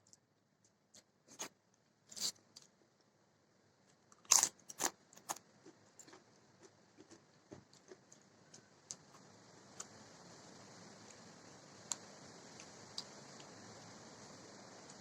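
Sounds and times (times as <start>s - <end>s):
crunchy food being chewed: 0.9s - 1.5s, 3.8s - 10.0s.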